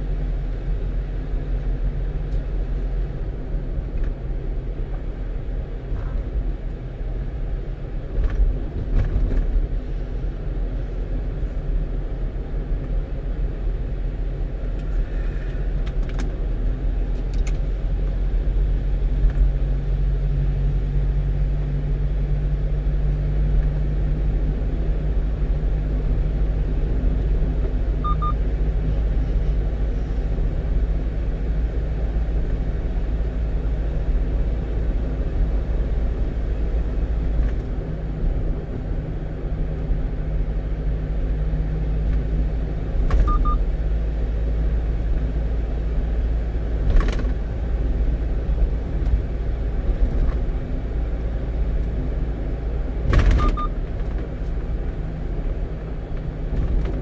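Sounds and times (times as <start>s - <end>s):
truck engine and road rumble: 0.0s - 57.0s
electronic double beep: 28.0s - 28.4s, 43.3s - 43.6s, 53.4s - 53.7s.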